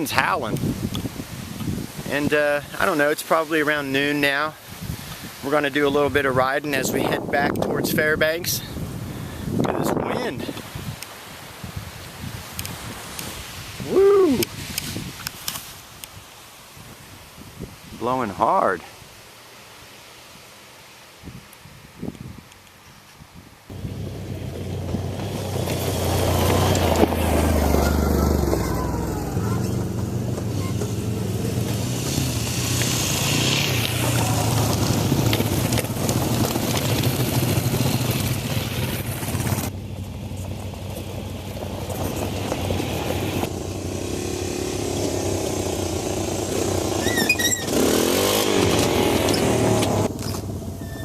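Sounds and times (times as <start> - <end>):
motorcycle engine running: 23.7 - 51.0.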